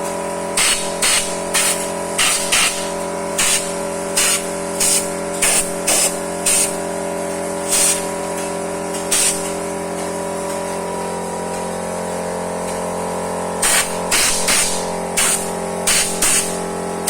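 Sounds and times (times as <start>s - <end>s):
vacuum pump humming: 0.0s - 17.0s
short hisses of air: 9.1s - 9.5s.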